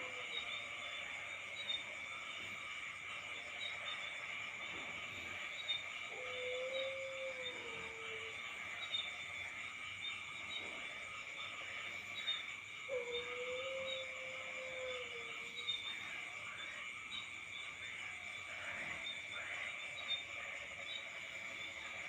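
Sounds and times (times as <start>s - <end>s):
crickets chirping: 0.0s - 22.0s.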